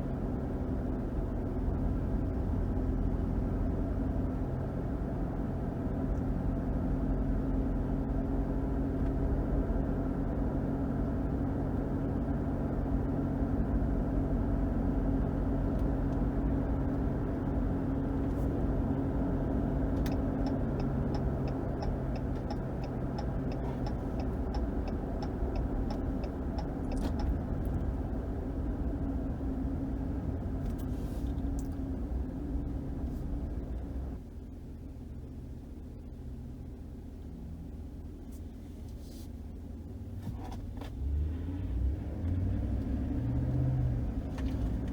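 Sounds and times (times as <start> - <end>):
car engine rumble: 0.0 - 44.9
tyres on road: 8.9 - 44.9
turn signal clicking: 19.8 - 28.0.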